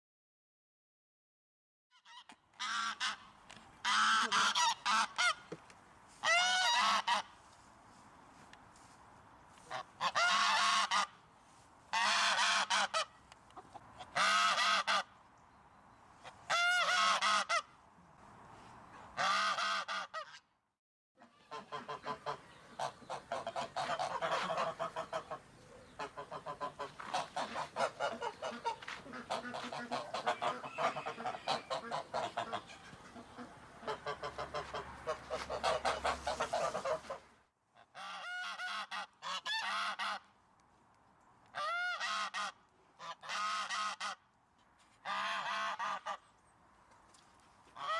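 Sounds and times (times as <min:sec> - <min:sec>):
goose honking: 0:02.0 - 0:05.5, 0:06.2 - 0:07.4, 0:09.6 - 0:11.2, 0:11.9 - 0:15.1, 0:16.2 - 0:17.7, 0:19.2 - 0:20.4, 0:21.2 - 0:40.3, 0:41.6 - 0:44.3, 0:45.0 - 0:46.2
many geese honking: 0:02.0 - 0:05.5, 0:06.1 - 0:07.4, 0:09.6 - 0:11.2, 0:11.9 - 0:15.1, 0:16.2 - 0:17.7, 0:19.2 - 0:20.4, 0:21.2 - 0:40.3, 0:41.6 - 0:44.2, 0:45.0 - 0:46.2.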